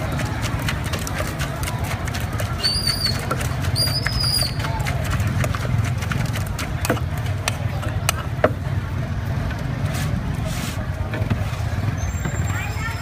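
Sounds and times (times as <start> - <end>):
sharp clicks and knocks: 0.0 - 8.7
passing traffic rumble: 0.0 - 13.0.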